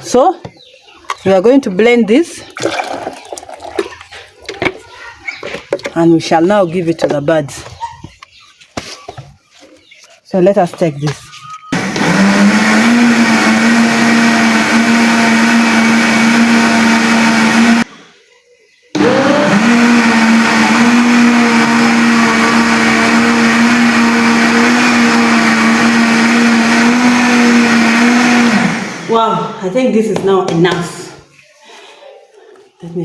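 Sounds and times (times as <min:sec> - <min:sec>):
blender running: 0:11.8 - 0:17.9, 0:19.0 - 0:29.2.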